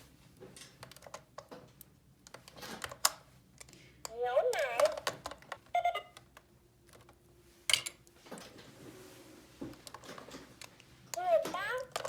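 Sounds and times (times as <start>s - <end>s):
plastic toy parts clicking: 2.3s - 7.1s, 10.6s - 12.0s.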